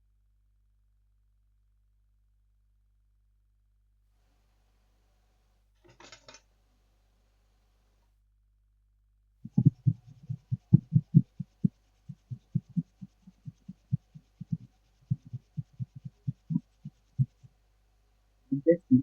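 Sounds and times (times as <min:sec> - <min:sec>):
dull low thumps: 0:09.5 - 0:17.5.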